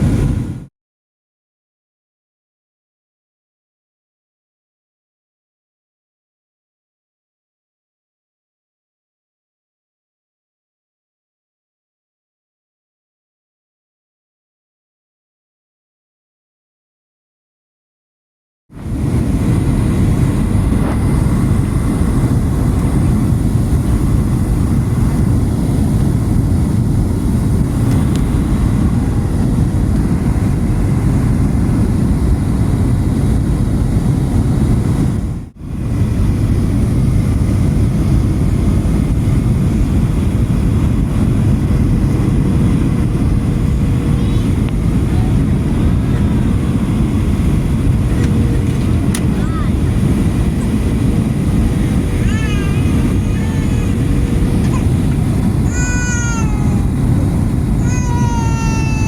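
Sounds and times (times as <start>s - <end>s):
airliner cabin noise: 0.0s - 0.7s, 18.8s - 59.0s.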